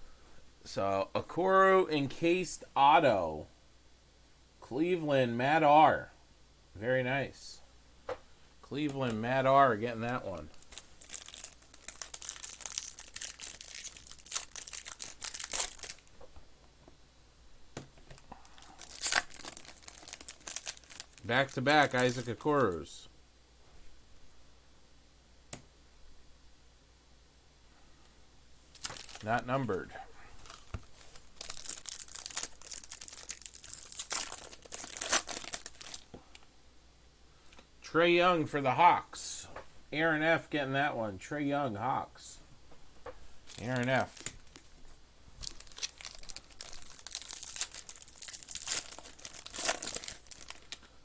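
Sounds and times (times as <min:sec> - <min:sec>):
card pack wrapper crinkling: 0:10.1 - 0:16.2, 0:18.1 - 0:22.9, 0:28.7 - 0:36.1, 0:43.5 - 0:44.7, 0:45.4 - 0:51.0.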